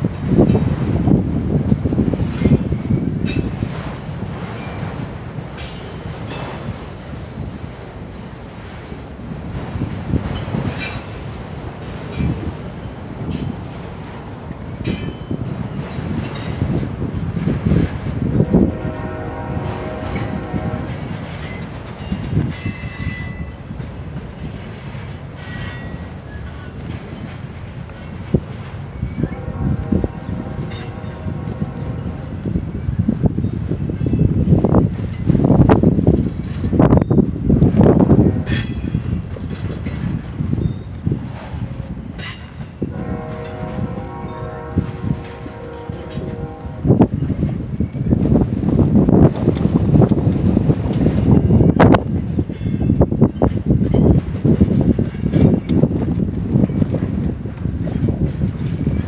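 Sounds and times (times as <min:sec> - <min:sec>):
train wheels rumbling on rails: 0:00.0 - 0:59.0
high wheel squeal: 0:06.7 - 0:08.0, 0:25.4 - 0:26.9
high-pitched wheel squeals: 0:06.7 - 0:08.0.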